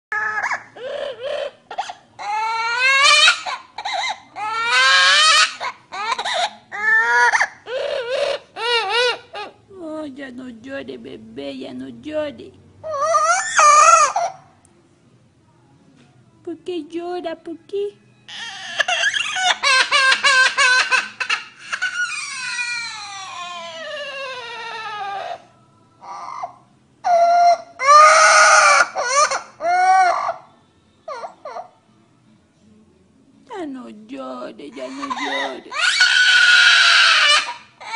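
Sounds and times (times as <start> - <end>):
animal wailing: 0.1 - 9.6, 12.8 - 14.5, 18.3 - 31.9, 34.8 - 37.9
animal yelping: 0.1 - 9.6, 12.8 - 14.5, 18.3 - 31.8, 34.8 - 37.9.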